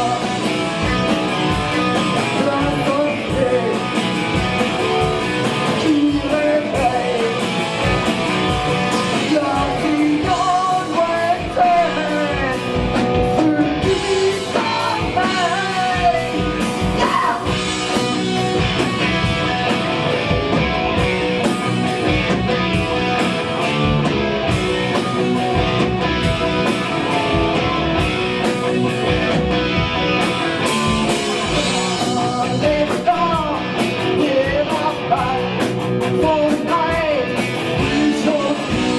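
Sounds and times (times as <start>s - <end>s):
person singing: 0.0s - 0.6s, 1.8s - 4.3s, 5.5s - 7.8s, 9.0s - 17.7s, 31.4s - 38.9s
hard rock band playing: 0.0s - 38.9s.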